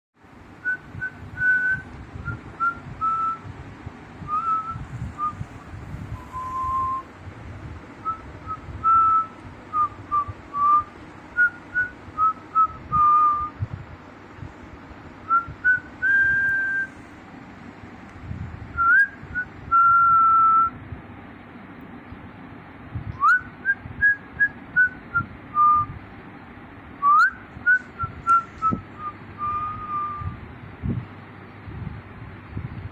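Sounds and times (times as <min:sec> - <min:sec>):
person whistling: 0:04.3 - 0:05.4, 0:06.2 - 0:07.1, 0:15.3 - 0:17.0, 0:27.0 - 0:30.4.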